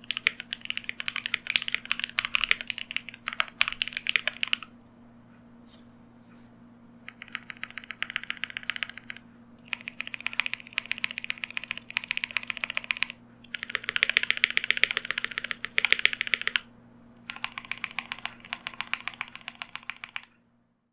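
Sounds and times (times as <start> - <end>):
typing on mechanical keyboard: 0.0 - 4.7, 7.1 - 16.7, 17.3 - 20.3.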